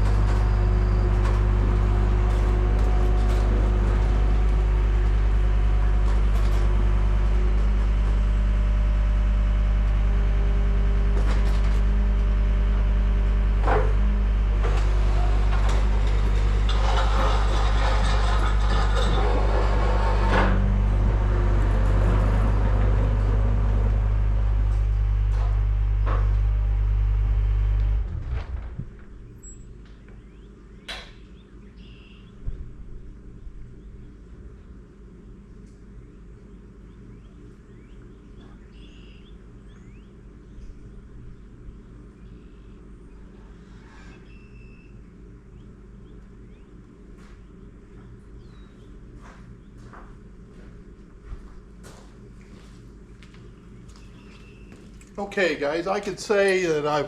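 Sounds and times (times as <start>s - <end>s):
clattering and rustling: 0.0s - 8.4s, 14.6s - 24.0s, 27.8s - 29.8s
motor humming: 0.0s - 30.5s.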